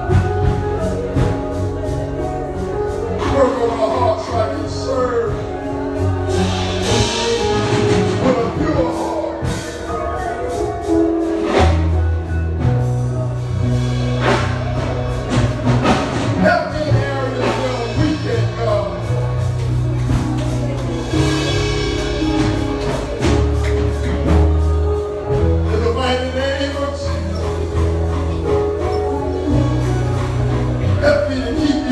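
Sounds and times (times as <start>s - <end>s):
gospel singing over a band: 0.0s - 31.9s
percussion strikes: 0.0s - 31.9s.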